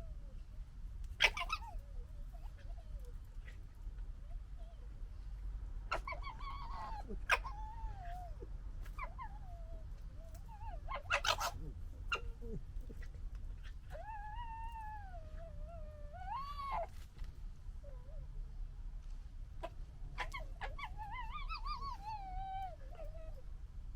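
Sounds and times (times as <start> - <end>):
fox cubs harsh chattering: 1.2 - 1.8, 10.9 - 12.3
fox cubs whining calls: 1.2 - 3.6, 10.2 - 15.0.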